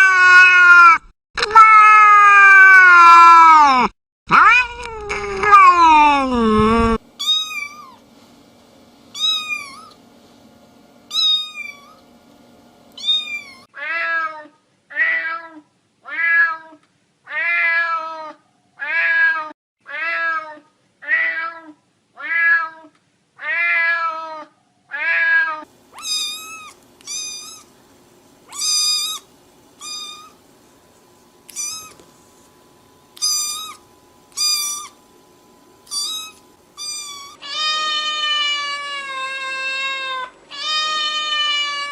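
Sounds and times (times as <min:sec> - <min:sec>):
high-pitched cat meowing: 0:00.0 - 0:08.0, 0:09.2 - 0:10.0, 0:11.1 - 0:11.9, 0:13.0 - 0:27.7, 0:28.5 - 0:30.4, 0:31.5 - 0:32.0, 0:33.2 - 0:35.0, 0:35.9 - 0:41.9.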